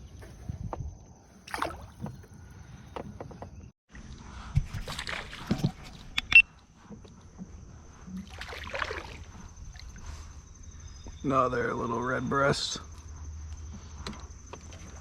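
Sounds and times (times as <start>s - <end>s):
small water splashes: 1.3s - 2.6s, 4.6s - 6.2s, 8.1s - 10.0s.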